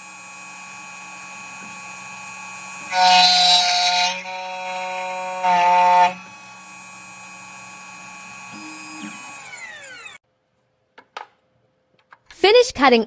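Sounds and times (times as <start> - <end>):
cutter grinding metal: 0.0 - 10.2
cutter spindle whine: 0.0 - 10.2.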